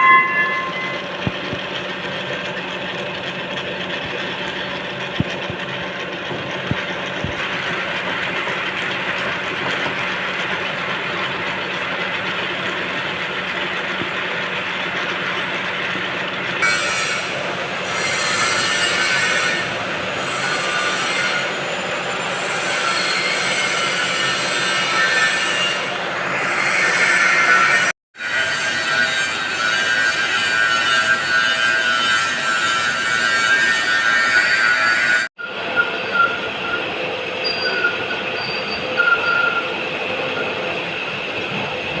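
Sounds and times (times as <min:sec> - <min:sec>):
high-pitched squeals: 0:00.0 - 0:02.0, 0:16.6 - 0:42.0
lathe tool scraping shaft: 0:00.0 - 0:42.0.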